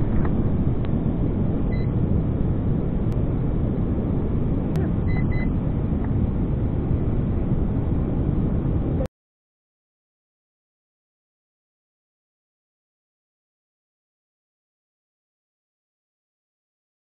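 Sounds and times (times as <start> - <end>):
wind buffeting microphone: 0.0 - 9.1
short electronic beeps: 1.7 - 1.9, 5.0 - 5.5.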